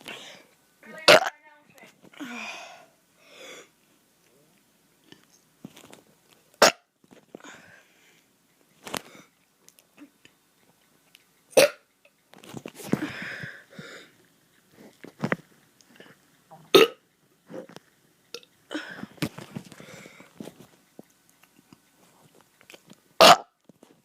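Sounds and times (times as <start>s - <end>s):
boy burping: 1.0s - 1.3s, 6.6s - 6.9s, 16.5s - 17.0s.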